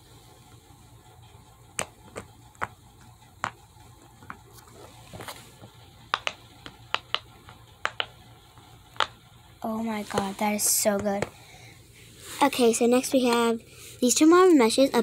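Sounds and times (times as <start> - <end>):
fidget toy bubbles popping: 6.1 - 8.2.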